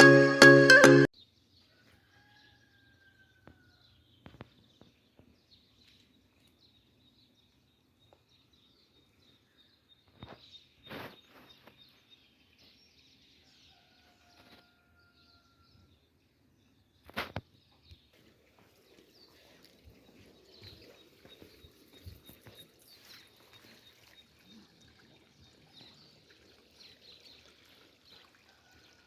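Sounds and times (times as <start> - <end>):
music: 0.0 - 1.1
rustling noise: 10.2 - 12.1, 17.0 - 17.5.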